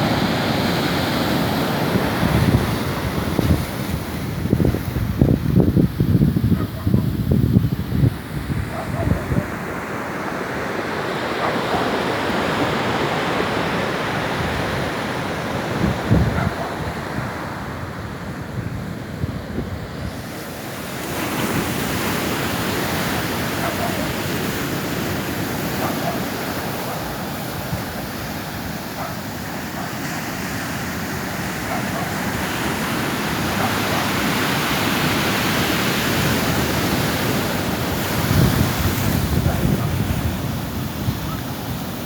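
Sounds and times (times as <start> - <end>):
wind buffeting microphone: 0.0 - 9.8, 13.3 - 20.4, 31.4 - 42.0
ocean surf washing onto beach: 0.0 - 42.0.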